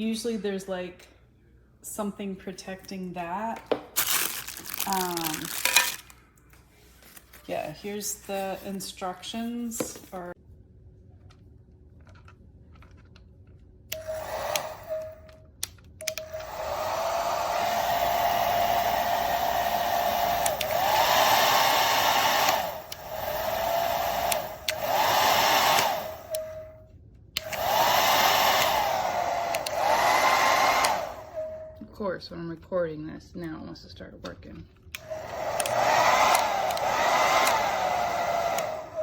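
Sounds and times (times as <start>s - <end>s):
hair dryer blowing: 14.0s - 15.2s, 16.0s - 26.8s, 27.4s - 31.8s, 35.0s - 39.0s.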